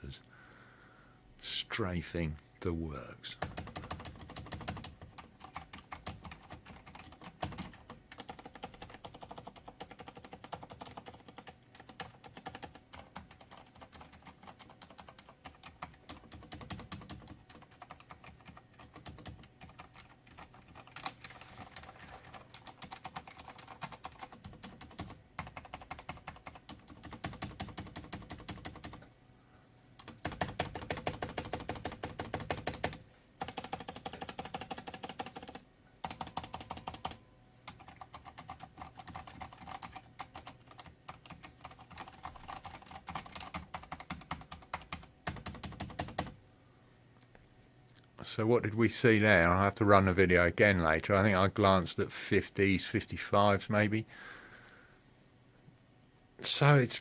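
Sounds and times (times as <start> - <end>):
typing on mechanical keyboard: 3.4 - 29.1, 30.0 - 46.4.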